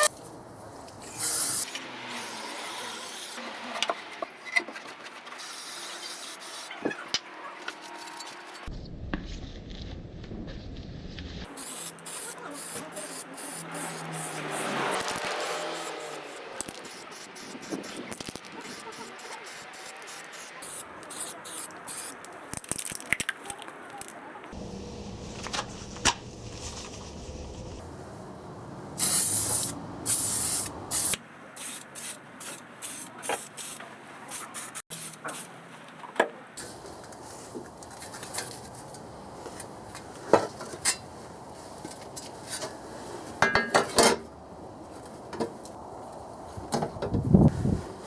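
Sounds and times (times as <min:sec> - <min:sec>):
hissing welding bursts: 0:01.1 - 0:03.4, 0:05.3 - 0:06.7, 0:11.5 - 0:23.2, 0:29.0 - 0:35.6.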